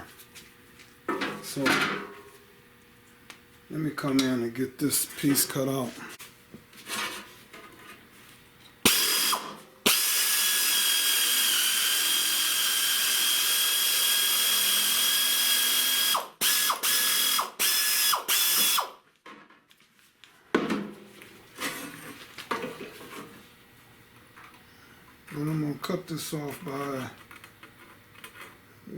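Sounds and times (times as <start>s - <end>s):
scraping and handling noise: 5.0s - 8.4s, 19.2s - 24.6s, 26.5s - 28.7s
power tool cutting sheet metal: 8.9s - 19.0s.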